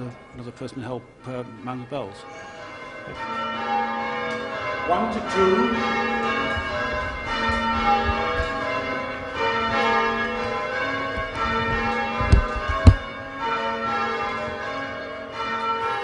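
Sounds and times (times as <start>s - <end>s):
church bells pealing: 0.0s - 16.0s
sharp knocks: 11.1s - 13.2s.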